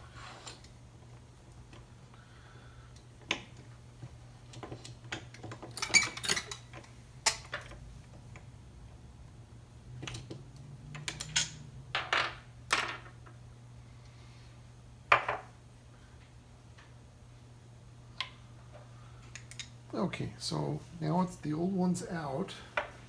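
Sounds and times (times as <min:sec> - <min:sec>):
metal tools clinking: 0:05.8 - 0:07.5.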